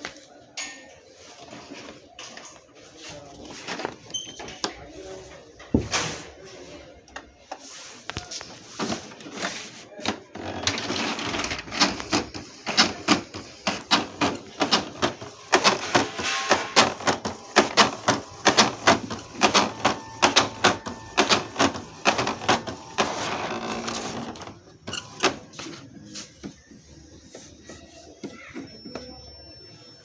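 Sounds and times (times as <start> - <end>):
inkjet printer clattering: 8.7 - 25.8.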